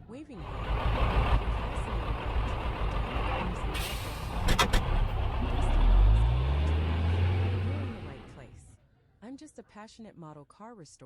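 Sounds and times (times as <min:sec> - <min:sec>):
low engine rumble: 0:00.2 - 0:08.8.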